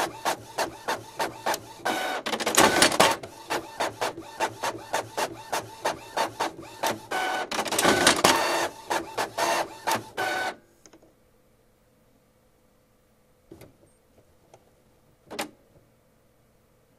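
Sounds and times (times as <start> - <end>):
printer printing fast: 0.0 - 10.6.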